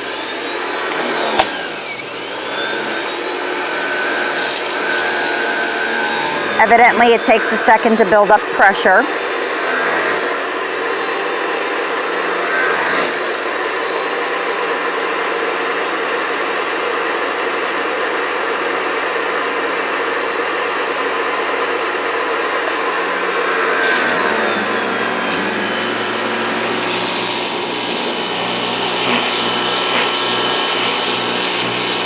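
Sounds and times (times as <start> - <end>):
pressure washer motor humming: 0.0 - 14.6, 22.6 - 32.0
pressure washer spray hissing: 26.7 - 32.0.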